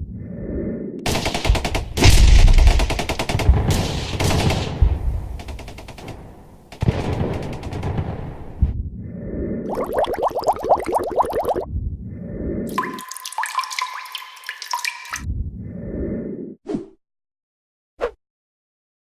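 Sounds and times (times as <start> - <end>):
machine-gun bursts: 1.1 - 8.4.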